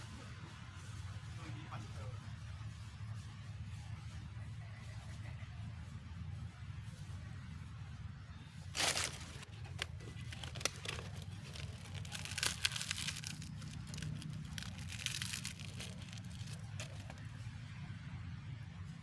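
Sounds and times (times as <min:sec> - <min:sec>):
rustling and crackling: 0:08.8 - 0:17.3.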